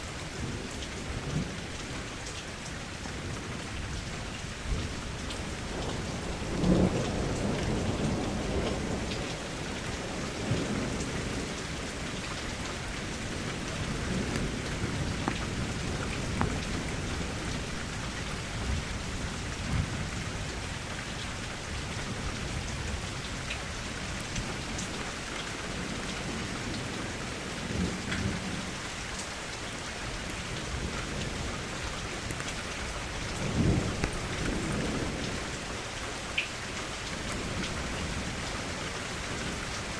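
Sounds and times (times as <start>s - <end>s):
steady rain: 0.0s - 39.9s
thunder rumbles: 4.7s - 25.0s, 30.0s - 35.8s.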